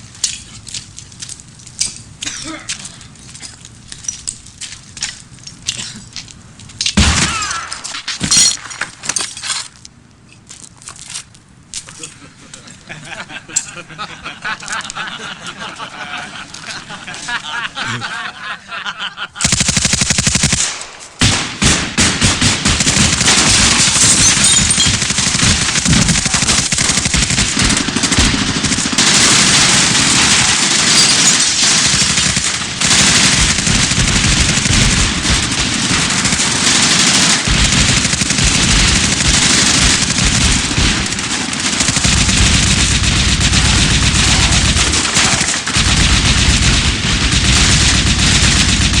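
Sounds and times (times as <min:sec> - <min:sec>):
machine-gun fire: 0:19.4 - 0:49.0.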